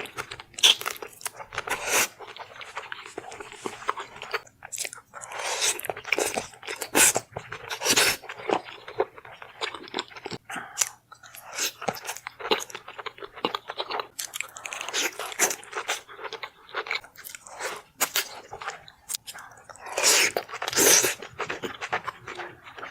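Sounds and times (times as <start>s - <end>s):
person chewing crunchy food: 0.0s - 22.9s.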